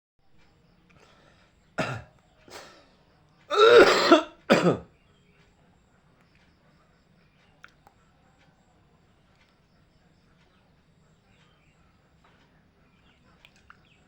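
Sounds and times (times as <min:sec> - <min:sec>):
person clearing throat: 0:01.8 - 0:02.8, 0:03.5 - 0:04.8
person coughing: 0:01.8 - 0:02.8, 0:03.5 - 0:04.8.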